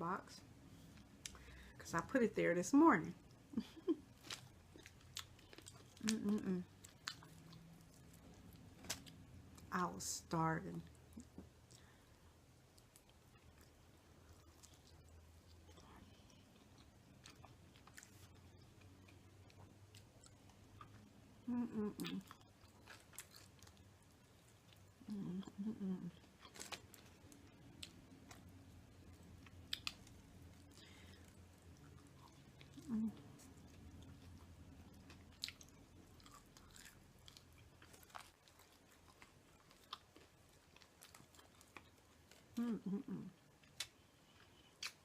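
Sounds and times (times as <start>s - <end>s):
chewing fried chicken: 3.2s - 9.8s, 10.8s - 42.7s
person humming: 6.0s - 6.7s, 21.5s - 22.2s, 25.0s - 26.2s, 32.8s - 33.2s, 42.6s - 43.3s
crisp crunches: 26.4s - 27.4s.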